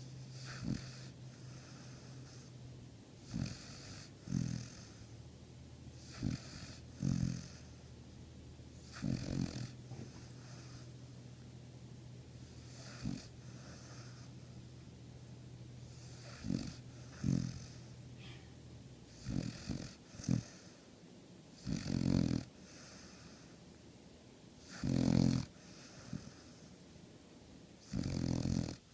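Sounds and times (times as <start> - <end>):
dog snoring and snorting: 0.0 - 2.5, 3.2 - 5.2, 6.0 - 7.8, 8.7 - 11.4, 12.4 - 14.6, 15.8 - 17.9, 19.1 - 20.8, 21.5 - 23.5, 24.6 - 26.7, 27.8 - 28.9.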